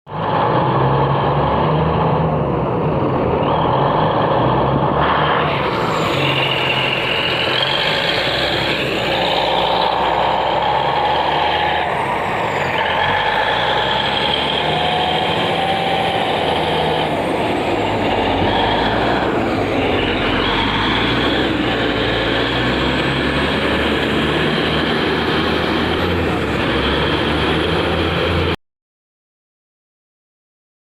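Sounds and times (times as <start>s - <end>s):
bulldozer diesel engine: 0.1s - 28.6s
high whining tones: 5.0s - 28.5s.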